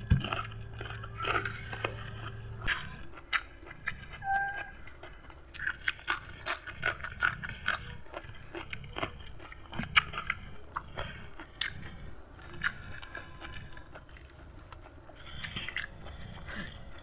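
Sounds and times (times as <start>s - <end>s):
person chewing crunchy food: 0.0s - 17.0s.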